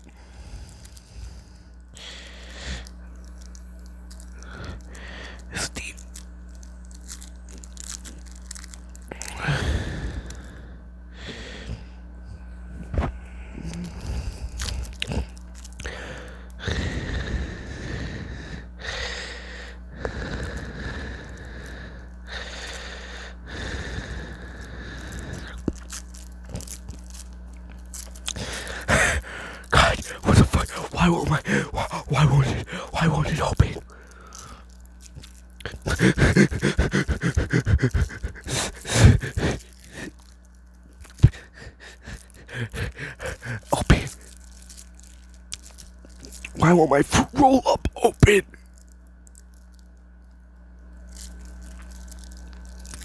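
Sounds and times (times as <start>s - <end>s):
breathy noise: 0.0s - 48.9s
chewing and crunching food: 0.0s - 53.0s
man panting: 9.2s - 10.5s, 28.3s - 34.6s, 35.6s - 40.2s, 41.0s - 44.3s, 46.4s - 48.5s.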